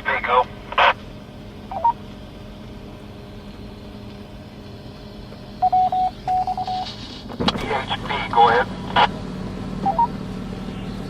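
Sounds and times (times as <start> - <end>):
steady low hum: 0.0 - 11.0
radio transceiver beeps: 5.6 - 6.9, 9.8 - 10.1.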